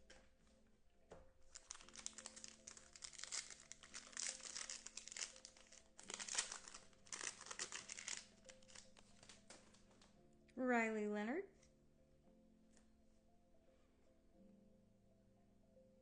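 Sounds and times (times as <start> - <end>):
foil wrapper crinkling: 1.5 - 9.9.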